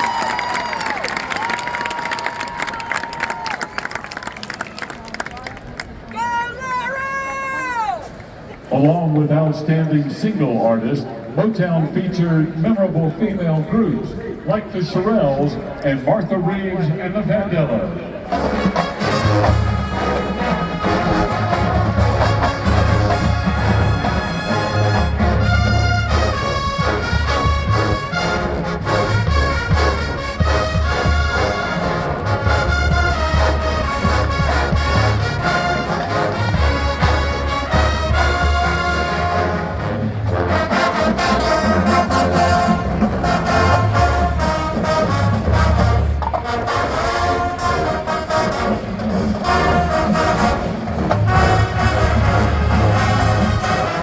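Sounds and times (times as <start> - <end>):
marching band brass: 5.8 - 54.0
steady drum beat: 18.4 - 46.2, 47.2 - 54.0.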